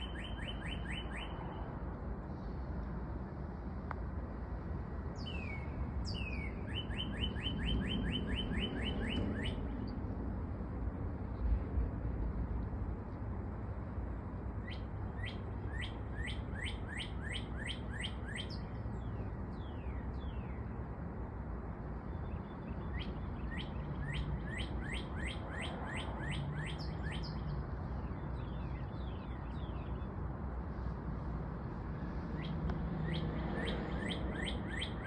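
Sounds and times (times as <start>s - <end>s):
bird chirping: 0.0s - 1.4s, 5.2s - 9.9s, 14.6s - 20.7s, 22.1s - 30.1s, 32.3s - 35.0s.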